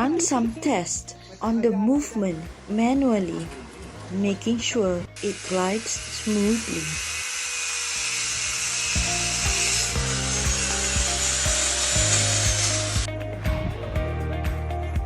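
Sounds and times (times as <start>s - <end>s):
background music with steady beat: 0.0s - 5.2s, 8.8s - 15.0s
power tool cutting hiss: 5.1s - 13.1s.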